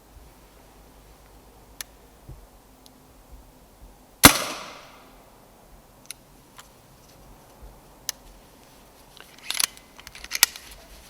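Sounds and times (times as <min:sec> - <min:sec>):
air rifle shot crack: 0:04.2 - 0:05.2.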